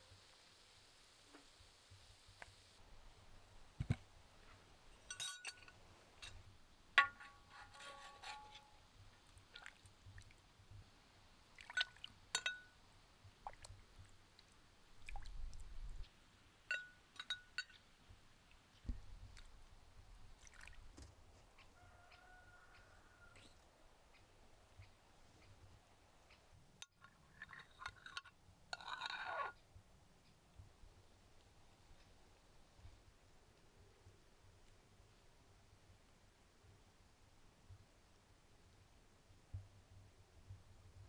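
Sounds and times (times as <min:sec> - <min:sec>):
glass and tableware clinking: 0:05.0 - 0:05.8, 0:11.8 - 0:12.7, 0:16.7 - 0:17.8.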